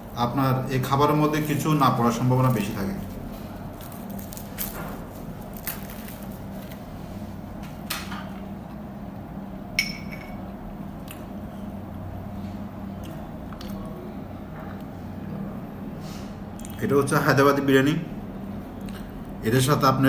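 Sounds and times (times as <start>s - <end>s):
steady low hum: 0.0s - 20.0s
tableware knocks and taps: 9.8s - 10.4s.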